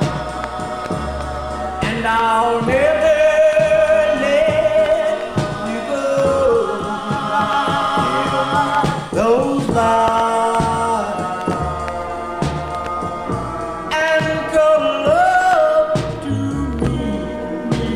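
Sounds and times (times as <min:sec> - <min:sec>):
backing music: 0:00.0 - 0:17.9
vocal group singing in harmony: 0:00.0 - 0:17.9.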